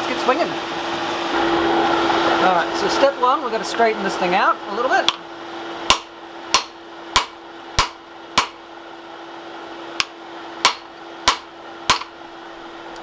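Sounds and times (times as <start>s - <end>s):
steady hum: 0.0s - 13.0s
hammer striking hot steel: 5.9s - 8.6s, 10.0s - 12.2s.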